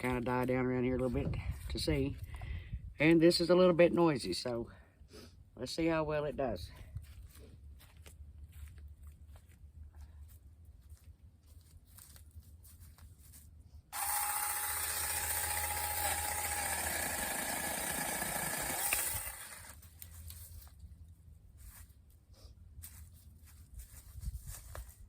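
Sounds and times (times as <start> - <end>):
battery chainsaw whining: 13.9 - 20.0.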